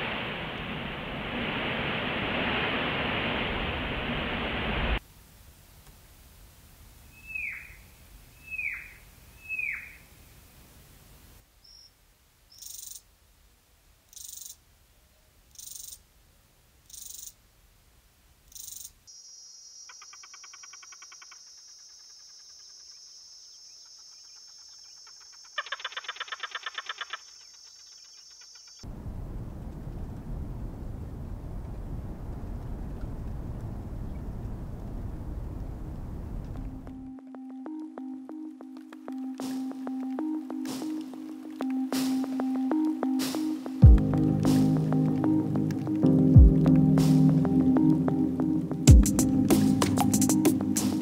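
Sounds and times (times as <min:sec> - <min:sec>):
desert wind over sand: 0:00.0 - 0:08.7, 0:28.8 - 0:37.0
bird whistled calls: 0:07.1 - 0:07.8, 0:08.4 - 0:10.0
insect buzzy chirps: 0:11.6 - 0:13.1, 0:14.1 - 0:14.6, 0:15.5 - 0:16.1, 0:16.8 - 0:17.4, 0:18.5 - 0:28.9
high insect drone: 0:18.5 - 0:28.9.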